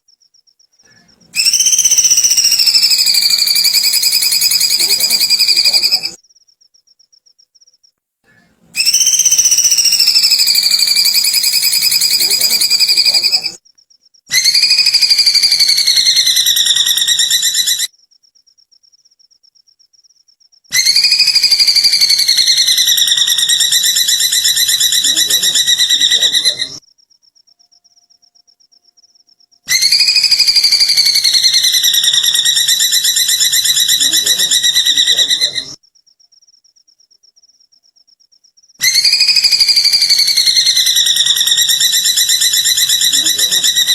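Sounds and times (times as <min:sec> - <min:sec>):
faint rapid high chirping: 0:00.0 - 0:08.0, 0:08.8 - 0:43.9
bird trilled whistles: 0:01.4 - 0:06.2, 0:08.8 - 0:13.6, 0:14.3 - 0:17.9, 0:20.8 - 0:26.8, 0:29.7 - 0:35.8, 0:38.8 - 0:43.9.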